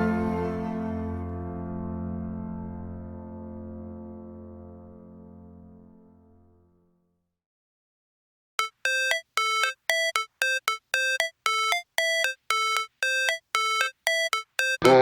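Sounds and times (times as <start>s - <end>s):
electronic chiming melody: 8.6s - 15.0s.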